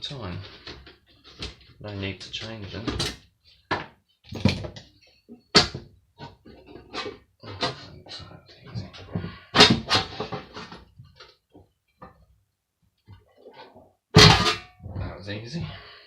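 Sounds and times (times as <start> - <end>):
metal hand dryer parts clanking: 14.2 - 14.7.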